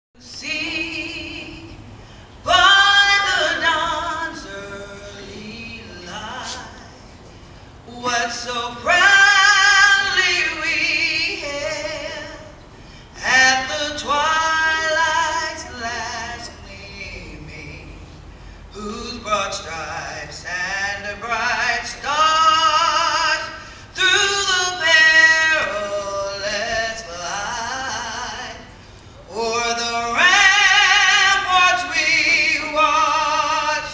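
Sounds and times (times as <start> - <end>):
voices singing with vibrato: 0.2 - 7.0.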